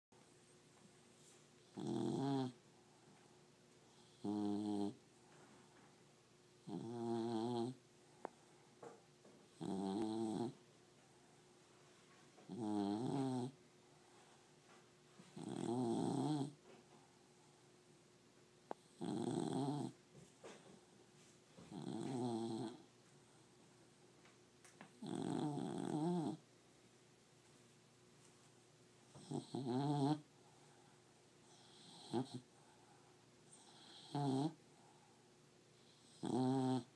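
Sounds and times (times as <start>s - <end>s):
dog snoring: 1.6s - 2.6s, 3.9s - 5.0s, 6.6s - 7.8s, 9.5s - 10.6s, 12.4s - 13.6s, 15.2s - 16.6s, 18.7s - 20.0s, 21.6s - 22.9s, 24.9s - 26.4s, 29.1s - 30.3s, 31.4s - 32.6s, 33.5s - 34.6s, 35.8s - 36.9s.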